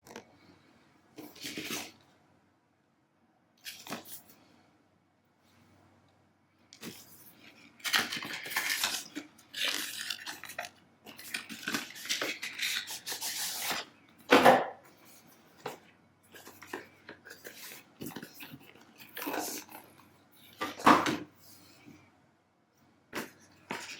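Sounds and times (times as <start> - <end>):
packaging rustling and scraping: 1.2 - 2.0, 3.6 - 4.4, 6.8 - 14.0, 15.0 - 21.7, 23.2 - 23.9.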